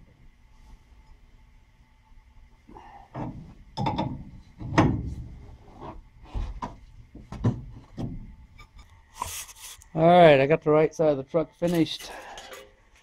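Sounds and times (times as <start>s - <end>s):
irregular knocks and clunks: 3.1s - 5.2s, 6.4s - 8.3s.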